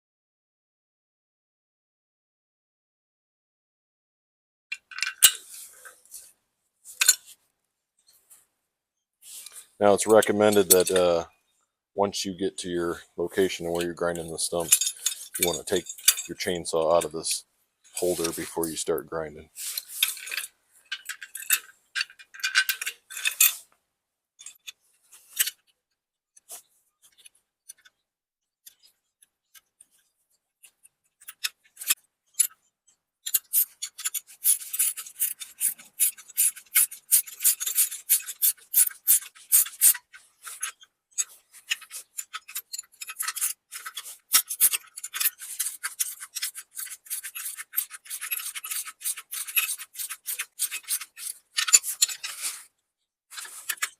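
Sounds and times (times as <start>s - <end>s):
metallic tool scrapes: 14.5s - 17.1s, 18.0s - 18.8s, 19.6s - 23.6s, 33.3s - 52.7s
ratchet rasping and clicking: 33.2s - 52.5s.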